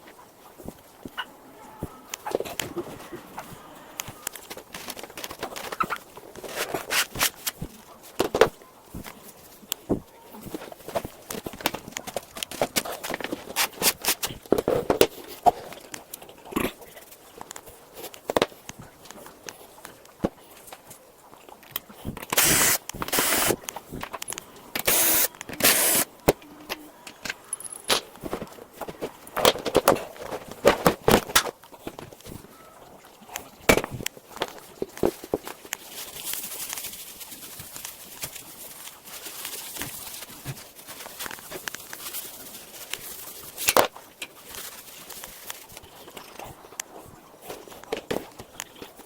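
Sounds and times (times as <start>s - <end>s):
clicks and knocks from handling parts: 21.6s - 32.4s
short hissing bursts: 22.4s - 23.6s, 24.8s - 26.1s.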